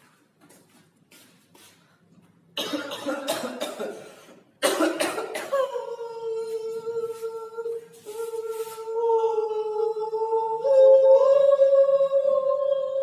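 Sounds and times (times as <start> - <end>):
person coughing: 2.6 - 6.0
person singing held vowel: 5.6 - 13.0.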